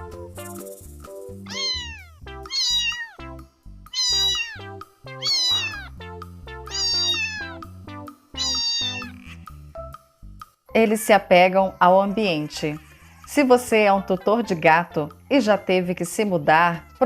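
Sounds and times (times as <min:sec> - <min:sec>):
background music: 0:00.0 - 0:17.0
cat meowing: 0:01.5 - 0:03.2, 0:03.9 - 0:06.0, 0:06.7 - 0:07.6, 0:08.4 - 0:09.4.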